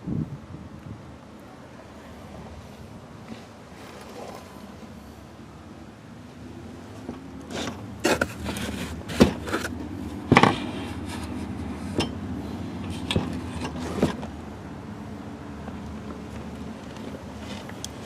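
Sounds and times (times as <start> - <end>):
scraping of hard objects: 7.5 - 12.2.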